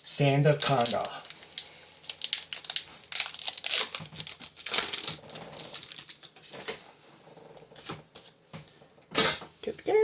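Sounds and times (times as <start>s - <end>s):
wrapper and cards rustling: 0.5s - 7.0s.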